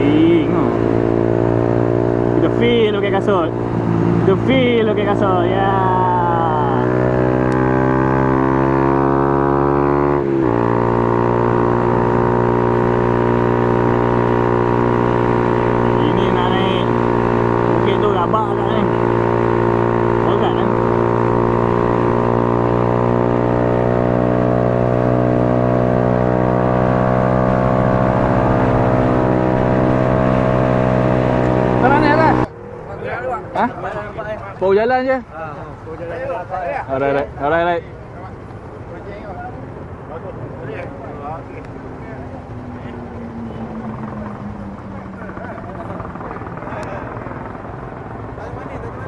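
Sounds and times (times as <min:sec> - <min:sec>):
motorcycle engine under load: 0:03.2 - 0:32.5.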